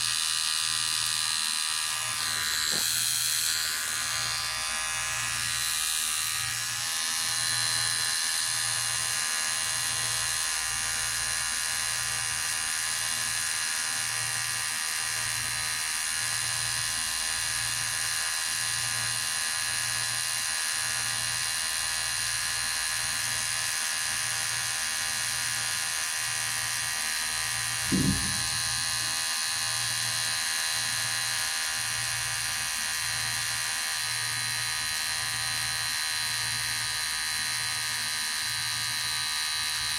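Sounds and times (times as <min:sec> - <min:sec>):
electric hair clipper buzzing: 0:00.0 - 0:39.9
brief thump: 0:27.8 - 0:29.2.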